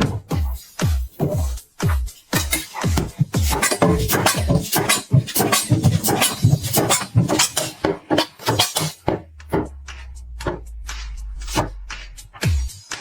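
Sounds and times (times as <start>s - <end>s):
knife chopping fruit on board: 1.2s - 9.8s.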